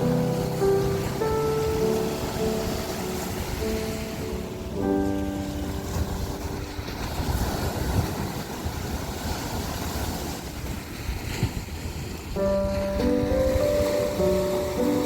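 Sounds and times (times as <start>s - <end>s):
background music: 0.0s - 6.8s, 12.4s - 15.0s
ocean waves: 0.0s - 15.0s
wind buffeting microphone: 0.0s - 15.0s.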